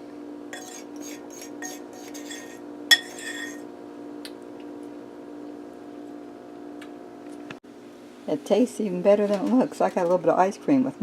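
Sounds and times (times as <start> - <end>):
metal utensil scraping dishes: 0.6 - 3.6.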